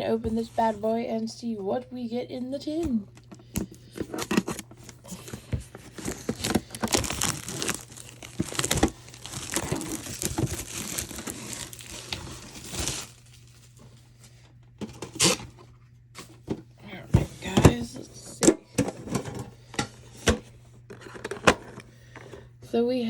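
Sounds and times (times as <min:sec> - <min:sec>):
plastic wrapping crinkling and tearing: 0:04.1 - 0:13.8, 0:14.9 - 0:15.4.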